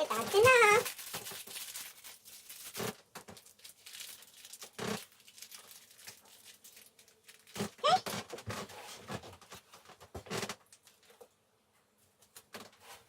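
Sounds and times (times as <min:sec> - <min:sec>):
seed packet rustling and crinkling: 0:00.0 - 0:08.9.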